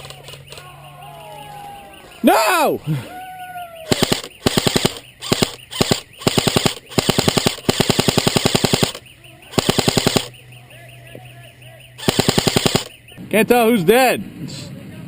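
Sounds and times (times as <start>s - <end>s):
airsoft gun firing bursts: 3.9s - 10.3s, 12.0s - 13.0s.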